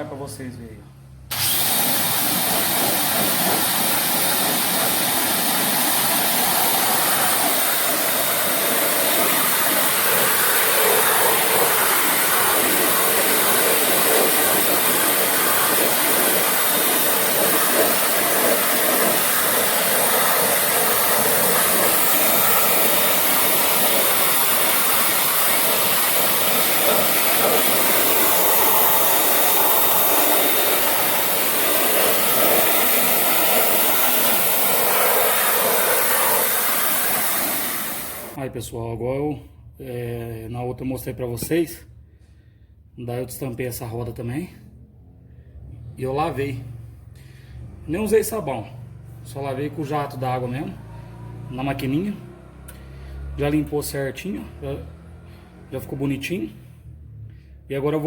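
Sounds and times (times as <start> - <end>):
pressure washer spraying water: 1.3 - 38.4.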